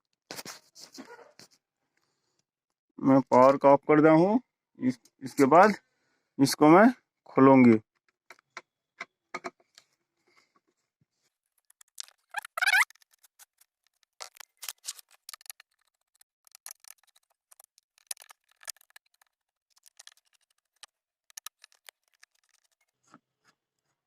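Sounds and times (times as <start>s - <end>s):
screwdriver clicks and scrapes: 11.6s - 23.6s
rising squeak: 12.3s - 12.9s.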